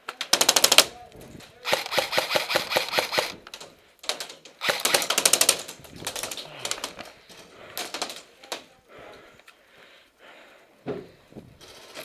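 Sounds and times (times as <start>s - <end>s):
airsoft guns firing bursts: 0.2s - 1.0s, 1.6s - 7.0s.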